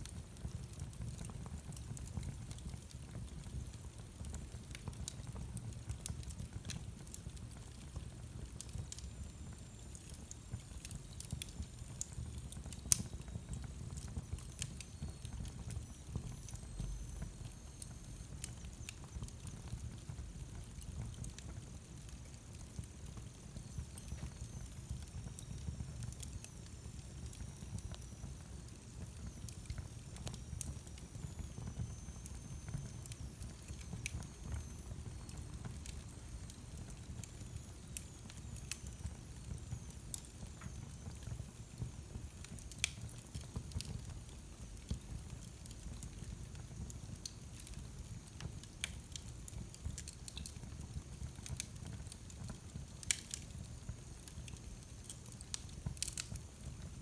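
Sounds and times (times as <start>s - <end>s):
low rumble of flames: 0.0s - 57.0s
wood fire crackling: 0.0s - 57.0s.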